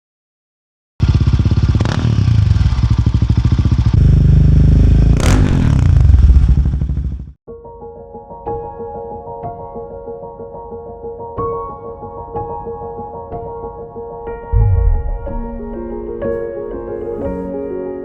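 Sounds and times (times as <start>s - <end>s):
motorcycle engine running: 1.0s - 7.4s
exhaust crack: 14.6s - 17.5s
soft music: 14.6s - 18.0s.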